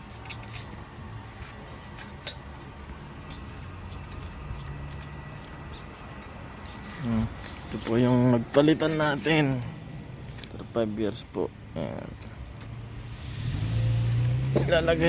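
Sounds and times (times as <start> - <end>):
tools clicking and knocking: 2.0 - 2.6.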